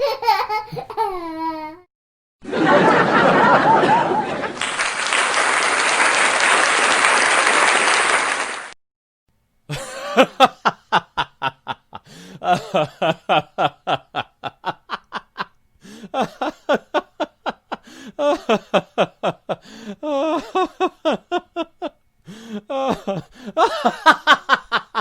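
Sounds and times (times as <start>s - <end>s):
person laughing: 9.7s - 25.0s.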